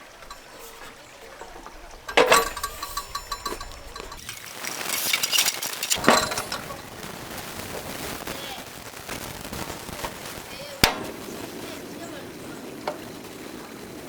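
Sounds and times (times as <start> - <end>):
light metal clinks: 0.0 - 6.8
metal stove clanking: 0.0 - 6.9, 10.8 - 11.6, 12.9 - 13.1
gas rushing hiss: 6.0 - 14.0.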